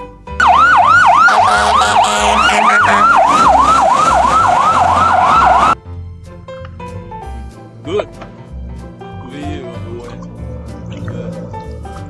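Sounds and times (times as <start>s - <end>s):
toy siren warbling wail: 0.4s - 5.8s.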